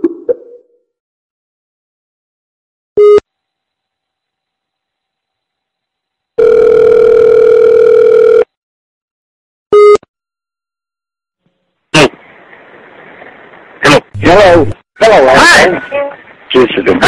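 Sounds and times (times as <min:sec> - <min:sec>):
telephone ringback tone: 0:06.4 - 0:08.5.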